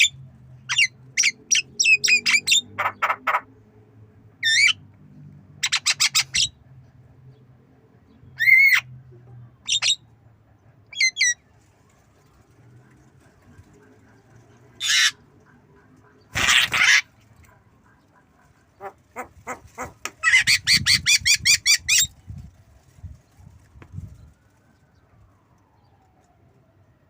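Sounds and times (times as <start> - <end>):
bird harsh squawks: 0.7 - 3.5, 4.4 - 4.8, 9.6 - 10.0, 14.8 - 15.2, 16.3 - 17.2, 18.8 - 22.1.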